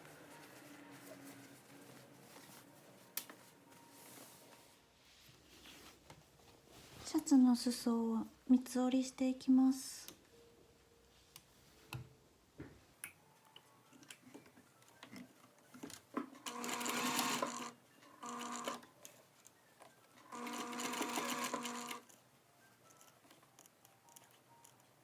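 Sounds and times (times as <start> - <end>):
sewing machine stitching: 16.4 - 18.8, 20.2 - 22.0.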